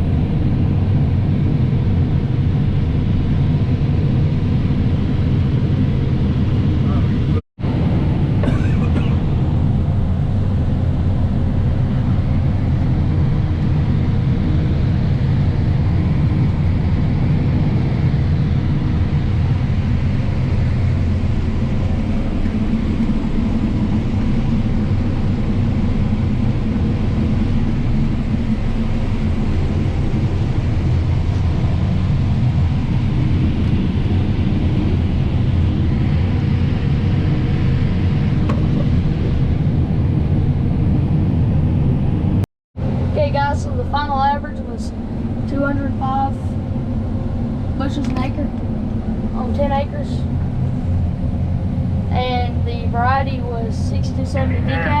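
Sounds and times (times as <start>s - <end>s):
diesel machinery engine drone: 0.0s - 55.0s.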